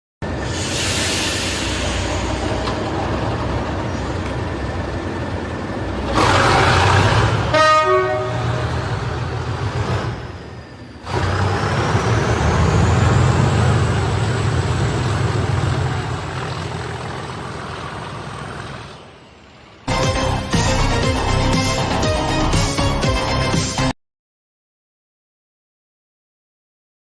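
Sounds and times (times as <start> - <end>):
diesel locomotive engine rumbling: 0.2 - 23.9
locomotive horn toot: 6.1 - 9.1.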